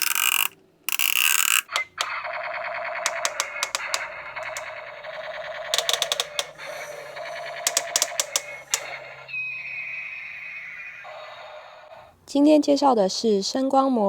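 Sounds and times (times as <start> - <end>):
toy machine-gun rattle: 0.0 - 9.2
electronic sharp cracks: 1.6 - 9.3
steady high tone: 1.7 - 12.2.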